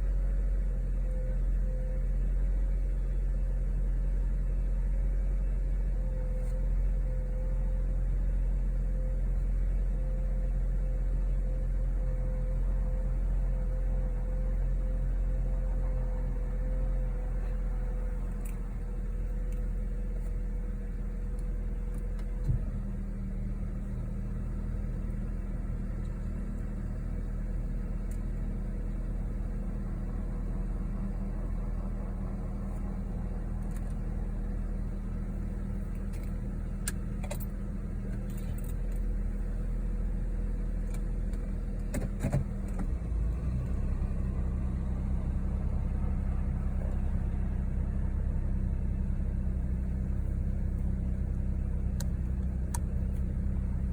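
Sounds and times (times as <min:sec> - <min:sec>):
car engine idling: 0:00.0 - 0:53.9
engine clicks: 0:17.4 - 0:20.5, 0:21.3 - 0:22.8, 0:33.5 - 0:34.2, 0:35.4 - 0:39.2, 0:40.7 - 0:43.8, 0:49.6 - 0:53.9.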